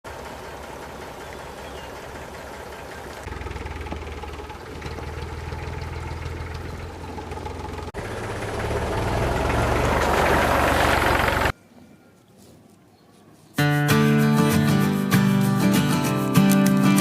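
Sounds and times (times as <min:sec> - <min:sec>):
engine idling: 0:00.0 - 0:11.6.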